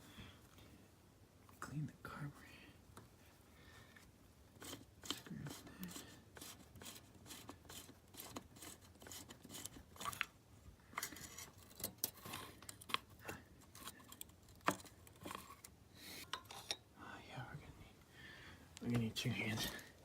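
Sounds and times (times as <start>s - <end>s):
clicks and scrapes of hand tools: 4.6s - 10.3s, 10.9s - 16.9s.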